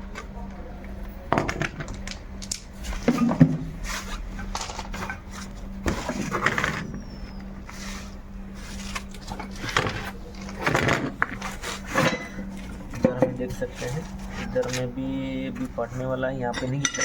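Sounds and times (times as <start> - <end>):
steady low hum: 0.0 - 17.0
metal tools clanking: 8.8 - 17.0.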